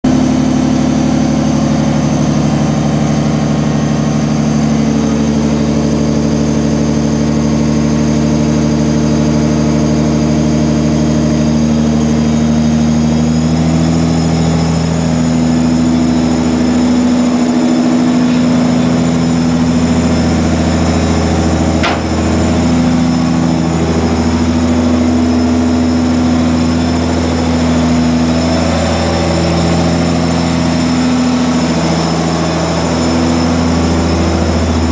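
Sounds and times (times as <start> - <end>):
car engine running at low revs: 0.1 - 34.9
sharp click: 21.8 - 22.4.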